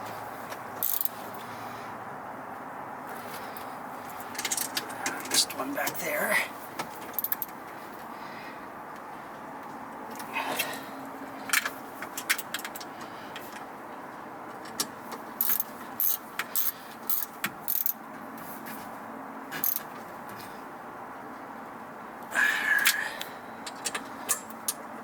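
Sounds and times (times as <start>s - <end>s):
metallic clicks of hand tools: 0.8s - 1.1s, 14.7s - 18.0s.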